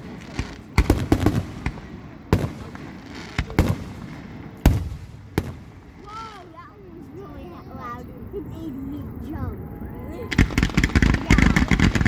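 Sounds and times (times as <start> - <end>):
fireworks bursting with sharp bangs: 0.0 - 7.2, 10.1 - 12.0.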